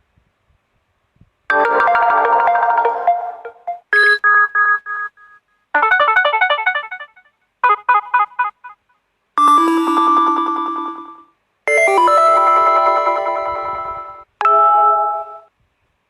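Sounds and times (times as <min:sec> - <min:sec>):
phone notification tones: 0:01.5 - 0:08.7, 0:09.4 - 0:11.3.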